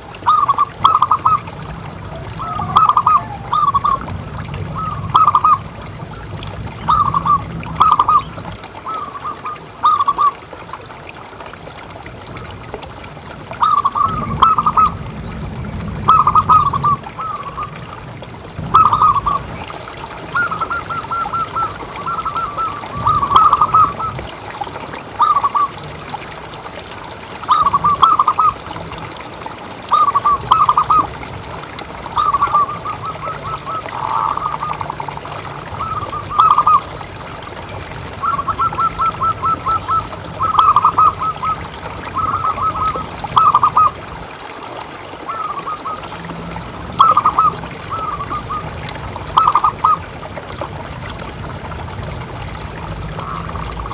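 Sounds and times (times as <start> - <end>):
dove cooing: 0.3 - 4.1, 4.8 - 5.7, 6.8 - 10.3, 13.6 - 15.0, 16.1 - 17.8, 18.6 - 24.2, 27.5 - 28.6, 29.9 - 31.1, 32.1 - 36.9, 38.1 - 44.0, 47.0 - 50.0.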